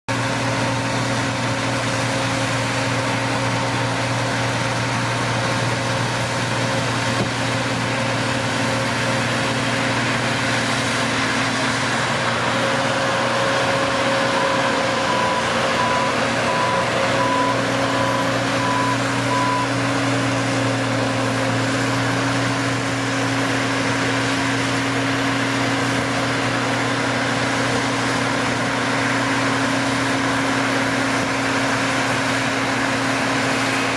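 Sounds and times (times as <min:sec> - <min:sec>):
farm machine engine running: 0:00.1 - 0:33.9
alarm beeping: 0:14.2 - 0:19.8.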